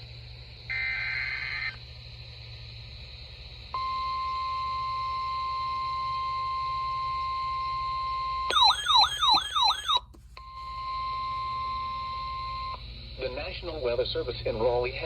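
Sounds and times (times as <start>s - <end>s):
warbling siren tone: 0.7s - 1.8s, 8.5s - 10.0s
steady warning beep: 3.7s - 14.2s.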